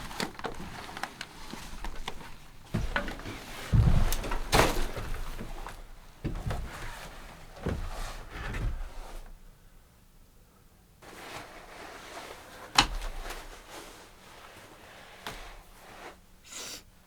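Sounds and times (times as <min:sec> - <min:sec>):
irregular thumps and knocks: 0:01.5 - 0:09.2.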